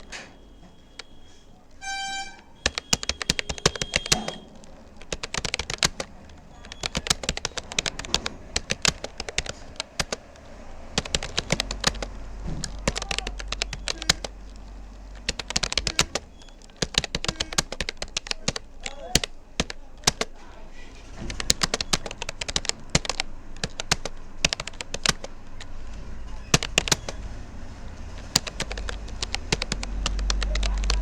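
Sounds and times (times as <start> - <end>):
short beep: 0.0 - 4.7
fast keyboard typing: 0.0 - 31.0.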